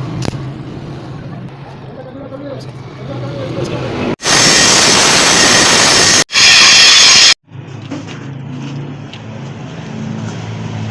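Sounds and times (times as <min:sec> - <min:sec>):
welding arc crackling: 0:04.2 - 0:07.4.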